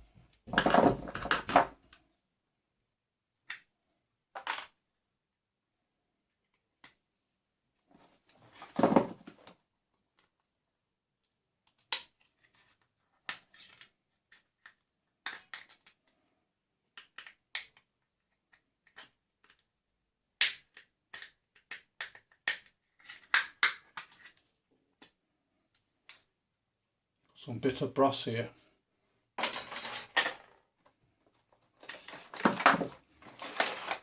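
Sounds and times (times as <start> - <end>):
clicks and knocks of parts: 11.7 - 16.1, 16.9 - 19.7
crunching scrape of plastic: 33.2 - 34.0.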